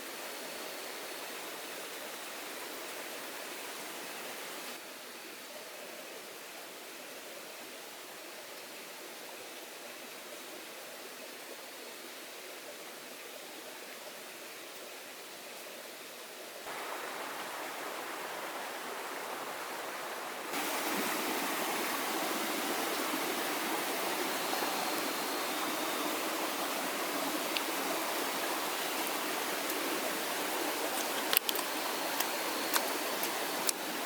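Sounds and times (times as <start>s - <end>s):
rushing water hiss: 0.0s - 5.3s, 13.4s - 34.0s.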